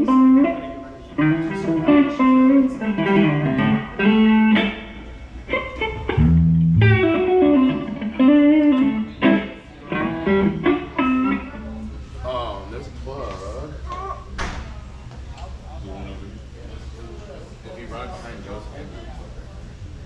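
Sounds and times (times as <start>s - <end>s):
electric guitar single notes: 0.0s - 11.9s
deep low note: 6.2s - 7.3s.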